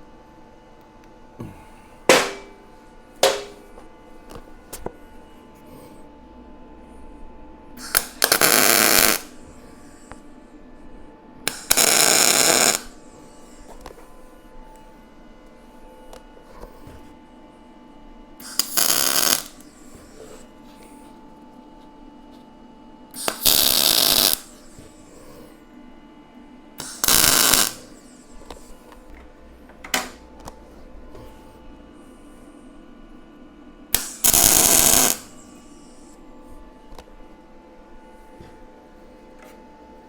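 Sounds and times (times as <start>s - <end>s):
faint steady hum: 0.0s - 40.0s
welding arc bursts: 7.8s - 9.4s, 11.5s - 13.0s, 18.4s - 19.7s, 23.2s - 24.5s, 26.8s - 28.0s, 34.0s - 35.4s.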